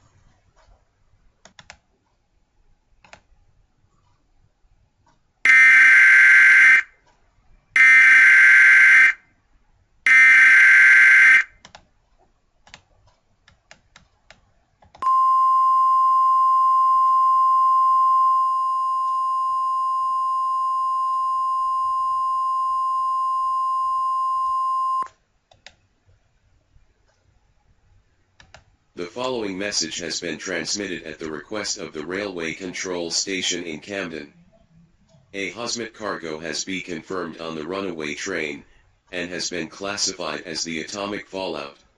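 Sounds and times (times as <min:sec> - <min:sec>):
steady attention tone: 0:15.0 - 0:25.1
faint clicks: 0:28.3 - 0:28.8.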